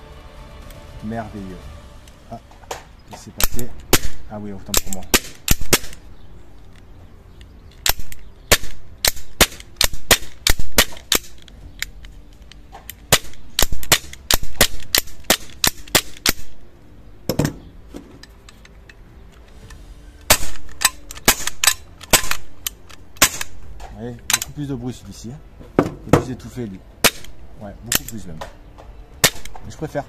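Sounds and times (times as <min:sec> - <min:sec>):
airsoft pistol firing sharp cracks: 0:03.4 - 0:06.0, 0:07.8 - 0:11.5, 0:12.9 - 0:16.6, 0:20.3 - 0:24.6, 0:27.0 - 0:28.2, 0:29.2 - 0:29.7.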